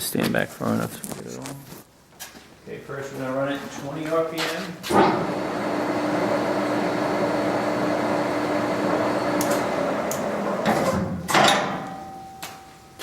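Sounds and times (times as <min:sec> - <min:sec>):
lathe gearbox whir: 0:04.9 - 0:11.0
sharp clunks: 0:10.6 - 0:12.4.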